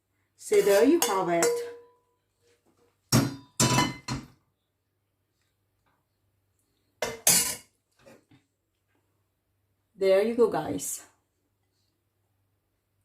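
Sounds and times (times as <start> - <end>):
dishes and utensils clinking: 0.6 - 1.9, 3.1 - 4.3, 7.0 - 7.7.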